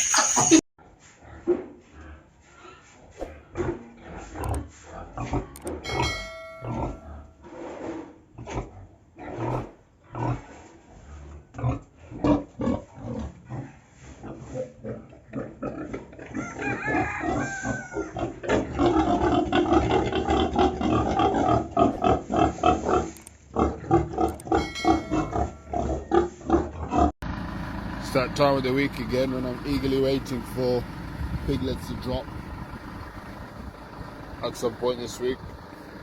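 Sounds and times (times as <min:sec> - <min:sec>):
pigs grunting: 0:00.9 - 0:27.1, 0:28.1 - 0:36.0
pig squealing: 0:02.6 - 0:10.6, 0:11.7 - 0:27.1.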